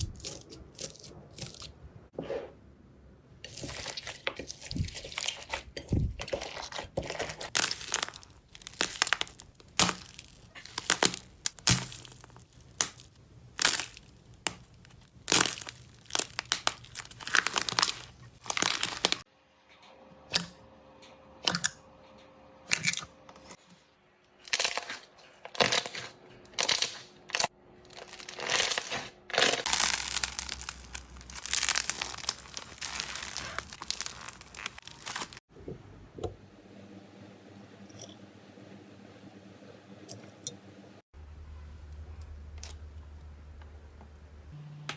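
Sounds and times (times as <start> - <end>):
slime crackling and popping: 7.4 - 19.2, 29.6 - 35.4.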